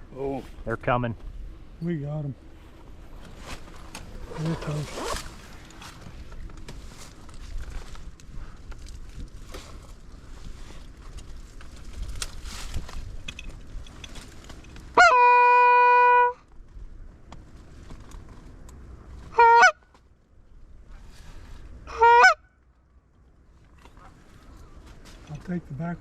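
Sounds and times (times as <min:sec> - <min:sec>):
wind rumbling on microphone: 0:02.4 - 0:15.0
goose honking: 0:15.0 - 0:16.4, 0:19.3 - 0:19.8, 0:21.9 - 0:22.4.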